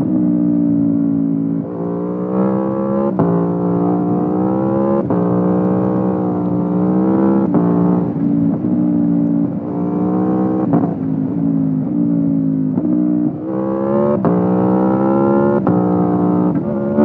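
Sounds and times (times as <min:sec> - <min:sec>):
motorcycle engine at mid revs: 0:00.0 - 0:17.0
sharp exhaust cracks: 0:01.6 - 0:12.1, 0:14.2 - 0:17.0.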